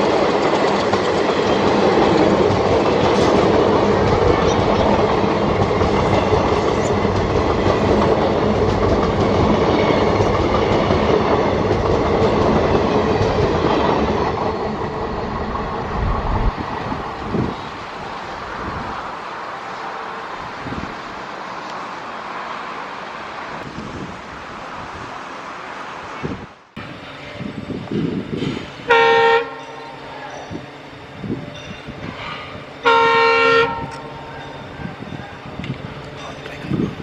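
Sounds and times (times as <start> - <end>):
train rumbling past on rails: 0.0 - 37.0.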